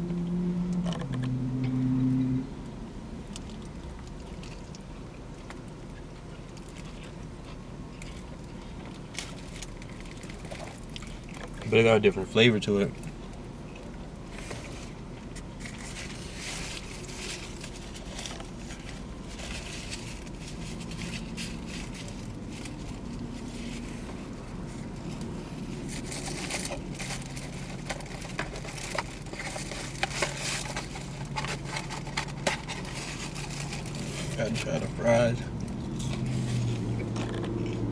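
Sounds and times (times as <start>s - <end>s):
steady low hum: 0.0s - 37.9s
person chewing: 3.3s - 11.6s, 35.5s - 37.9s
wrapper crinkling: 14.3s - 37.9s.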